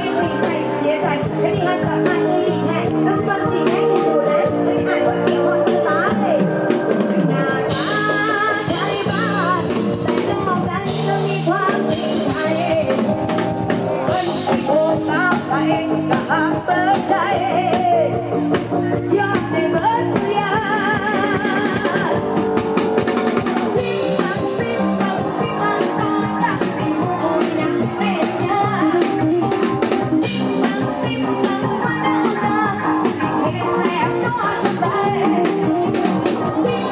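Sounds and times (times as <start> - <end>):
person singing with vibrato: 0.0 - 22.5, 23.6 - 36.9
drum kit beat: 0.0 - 36.9
guitar: 0.0 - 36.9.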